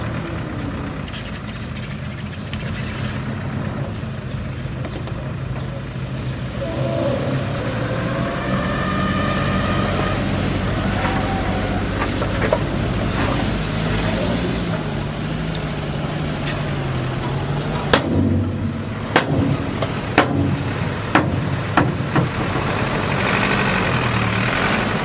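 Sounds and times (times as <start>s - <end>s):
heavy diesel engine running: 0.0s - 25.0s.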